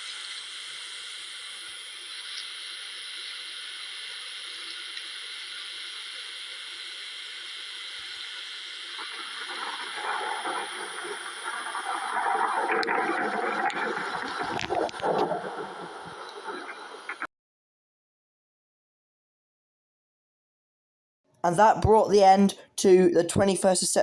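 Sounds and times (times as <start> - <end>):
heavy rain hissing: 0.0 - 17.3.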